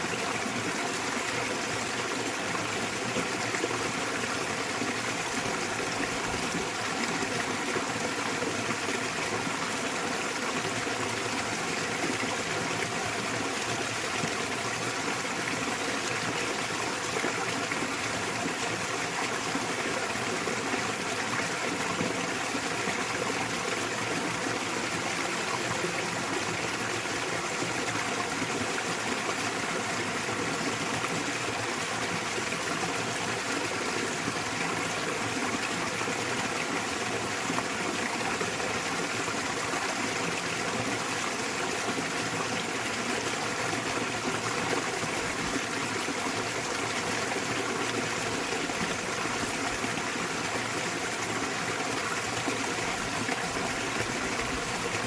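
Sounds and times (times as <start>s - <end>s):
small waterfall rushing: 0.0s - 55.0s.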